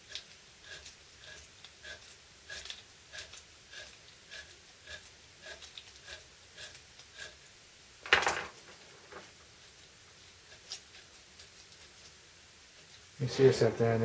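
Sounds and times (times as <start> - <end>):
abrasive foil scraping metal: 13.2 - 14.0.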